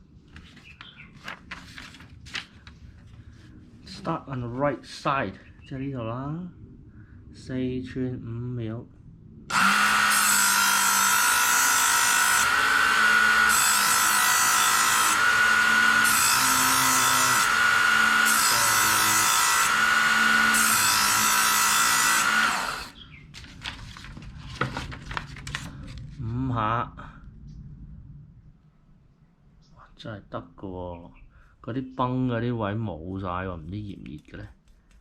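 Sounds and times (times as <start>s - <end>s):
knife sharpener motor whining: 9.5s - 23.0s.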